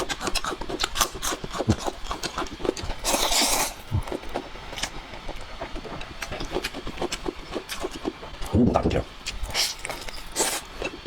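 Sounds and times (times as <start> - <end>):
wet chewing noises: 0.0 - 11.0
loud noodle slurp: 3.0 - 4.4.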